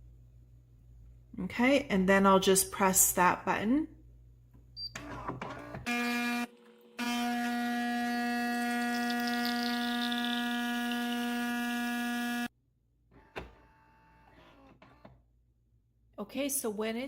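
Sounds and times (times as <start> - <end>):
coffee grinder whirring: 5.9 - 12.5.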